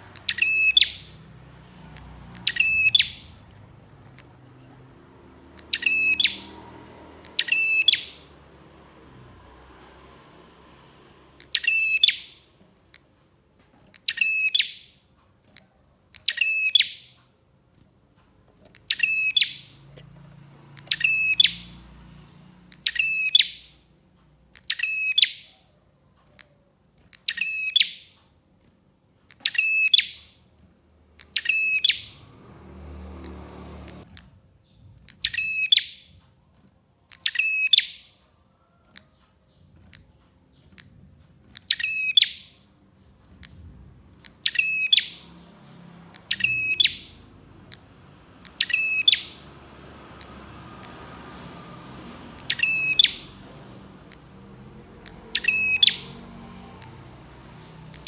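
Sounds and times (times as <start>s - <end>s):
bird trilled call: 0.0s - 1.2s, 1.9s - 4.9s, 5.5s - 8.3s, 11.4s - 12.5s, 18.7s - 19.8s, 20.7s - 21.8s, 31.2s - 32.2s, 41.6s - 42.6s, 44.2s - 45.4s, 46.1s - 49.5s, 52.4s - 53.4s, 54.9s - 57.0s.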